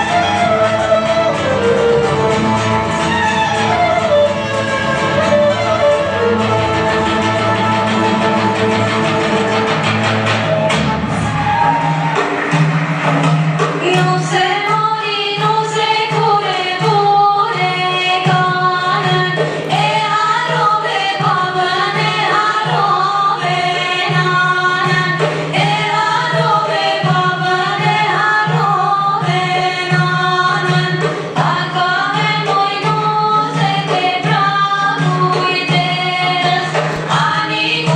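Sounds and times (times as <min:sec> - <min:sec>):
group of voices singing: 0:10.2 - 0:37.9.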